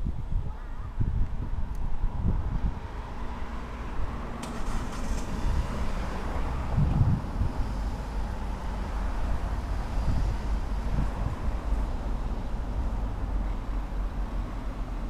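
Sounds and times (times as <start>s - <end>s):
steady low rumbling: 5.4s - 14.6s.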